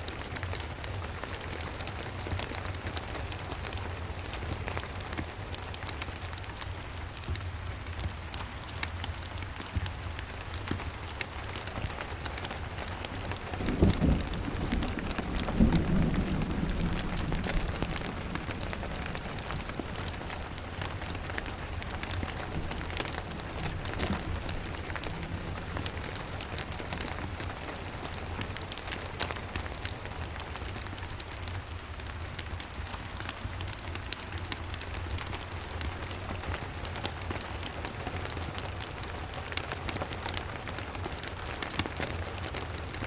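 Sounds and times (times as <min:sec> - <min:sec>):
rain on a cabin: 0:00.0 - 0:43.0
wood fire crackling: 0:00.0 - 0:43.0
steady low rumble: 0:13.4 - 0:28.2.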